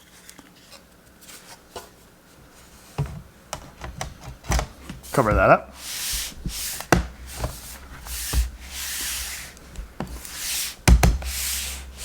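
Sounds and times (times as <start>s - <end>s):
brush swishing on metal case: 4.7s - 12.0s.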